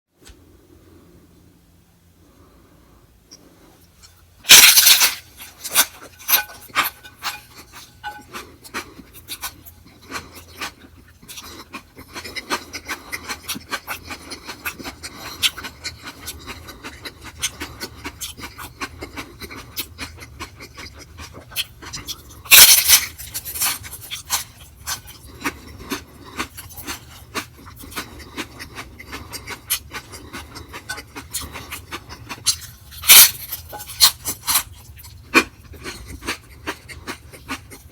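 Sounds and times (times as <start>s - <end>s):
wet chewing with mouth clicks: 5.4s - 37.9s.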